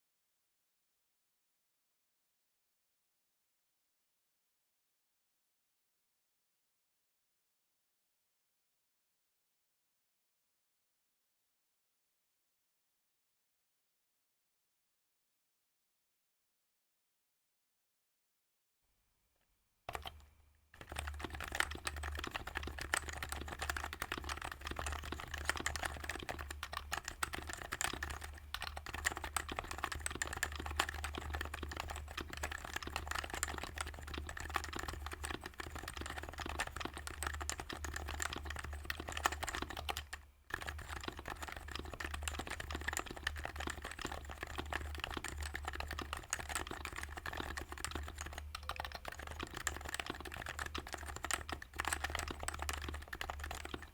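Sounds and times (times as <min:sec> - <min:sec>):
fast typing on keyboard: 0:19.9 - 0:53.9.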